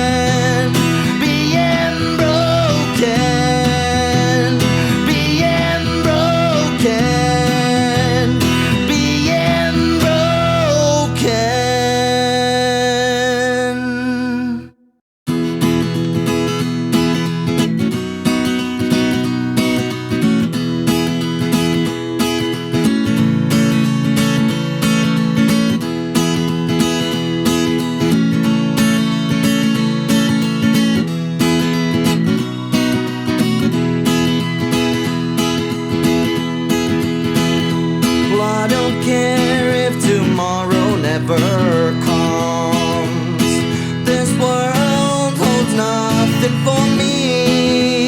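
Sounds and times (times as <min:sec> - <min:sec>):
acoustic guitar strumming chords: 0:00.0 - 0:48.0.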